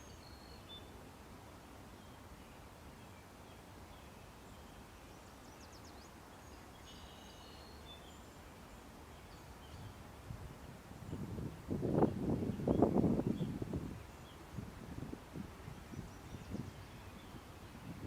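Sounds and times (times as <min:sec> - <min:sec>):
faint bird chirps: 0:00.0 - 0:01.0, 0:02.0 - 0:10.0, 0:15.9 - 0:18.0
outdoor background noise: 0:00.0 - 0:18.0.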